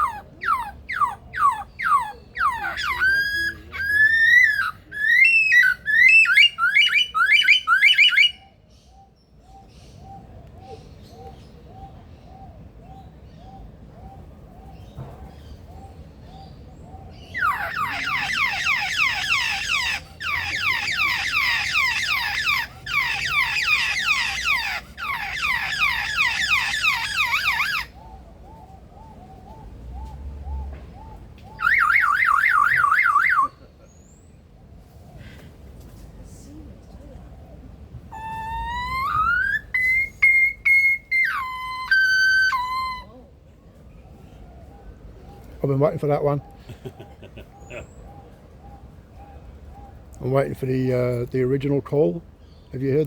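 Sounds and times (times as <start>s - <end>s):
lyrebird mimicking car alarm: 0.0s - 8.4s, 17.3s - 28.0s, 31.5s - 33.6s, 38.2s - 43.1s
faint repeating bird call: 17.1s - 34.2s.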